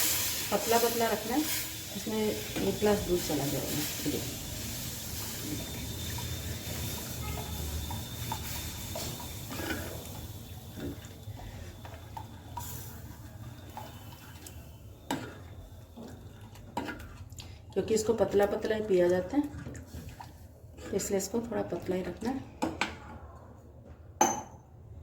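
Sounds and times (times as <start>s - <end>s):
liquid sloshing and scraping: 13.4s - 21.3s.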